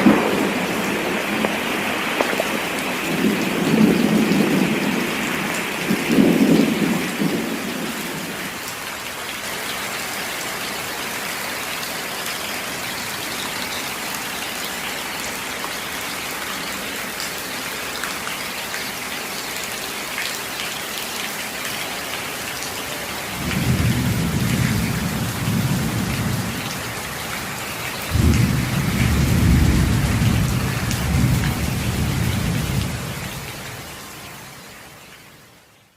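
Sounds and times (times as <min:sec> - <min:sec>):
thunder rumbling: 0:00.0 - 0:08.5, 0:23.4 - 0:27.5, 0:28.1 - 0:33.6
steady rain falling: 0:00.0 - 0:35.9.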